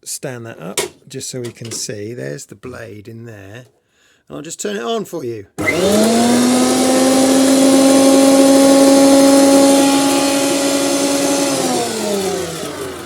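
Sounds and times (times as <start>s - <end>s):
planer motor whining: 5.6s - 13.0s.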